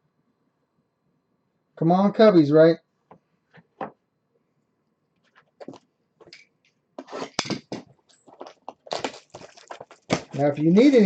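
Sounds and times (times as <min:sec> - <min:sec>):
packaging rustling: 0:07.2 - 0:11.0.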